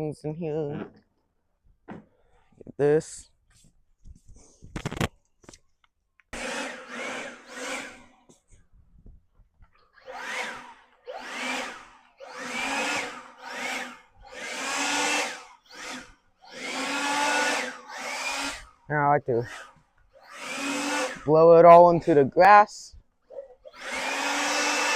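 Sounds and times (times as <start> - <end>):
leaf blower fan whine: 6.4 - 8.6, 9.8 - 24.9.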